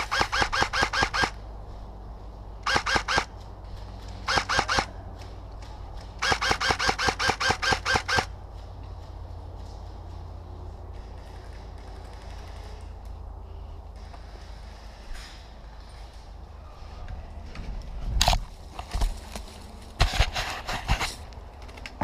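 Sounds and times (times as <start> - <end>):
airsoft gun firing bursts: 0.0 - 1.4, 2.6 - 3.3, 4.2 - 4.9, 6.2 - 8.3.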